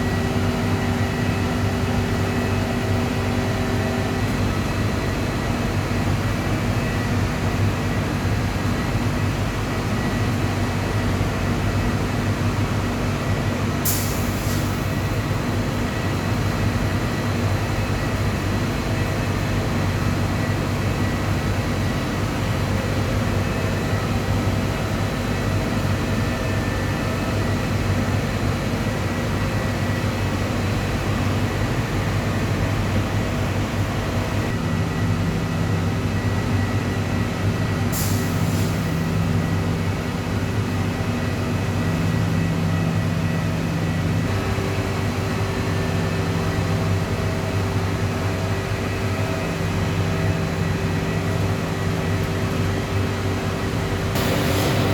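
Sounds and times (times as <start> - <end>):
hot-air generator droning: 53.6 - 54.9.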